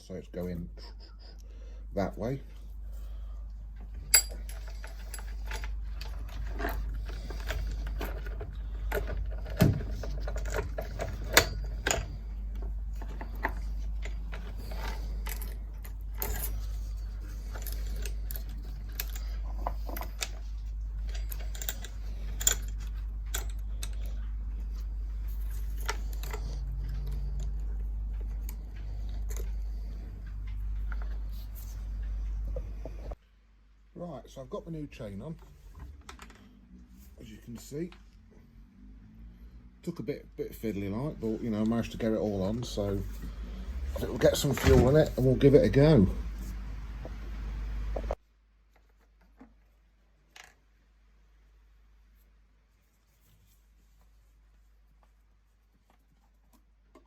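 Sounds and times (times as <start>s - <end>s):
steady low hum: 0.0s - 48.3s
chain links clinking and rattling: 3.8s - 33.2s.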